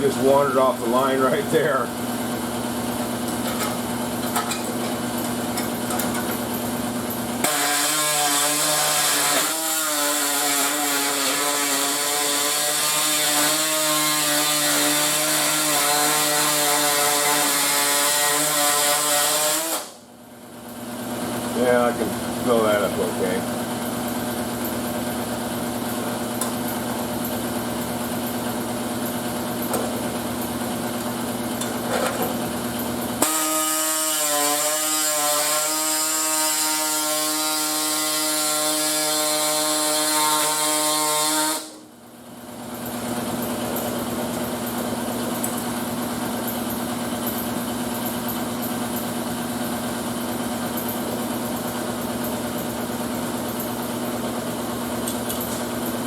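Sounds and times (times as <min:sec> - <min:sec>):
power tool whining: 0:02.4 - 0:20.0, 0:28.9 - 0:41.9.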